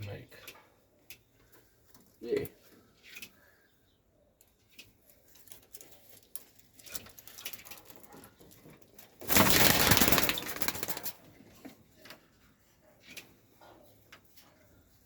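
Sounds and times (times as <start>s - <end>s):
pigeon wings flapping: 9.2s - 11.2s.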